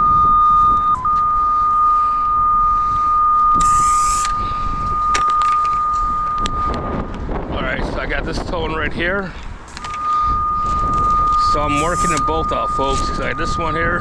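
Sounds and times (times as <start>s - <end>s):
high steady electronic tone: 0.0s - 7.3s, 9.7s - 14.0s
short hiss: 3.6s - 4.5s
clicks: 5.0s - 6.8s, 9.7s - 12.3s.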